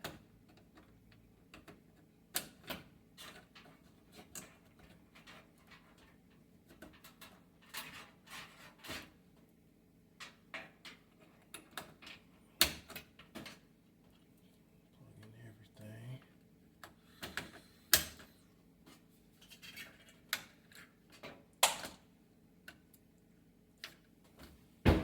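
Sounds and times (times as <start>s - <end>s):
plastic parts clicking and knocking: 0.0s - 8.0s.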